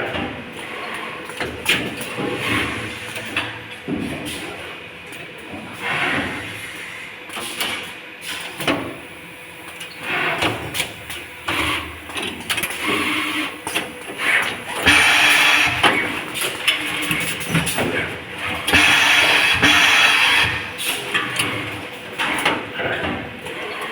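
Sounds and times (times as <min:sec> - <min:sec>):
pneumatic hiss: 0:14.8 - 0:16.1, 0:18.7 - 0:21.0.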